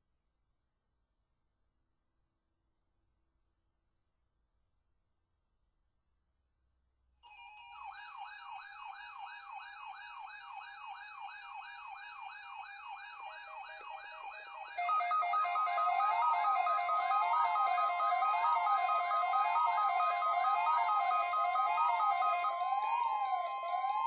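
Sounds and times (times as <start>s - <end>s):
steady siren tones: 9.1s - 24.0s
electronic siren yelping: 13.2s - 24.0s
slower wailing siren tone: 13.2s - 24.0s.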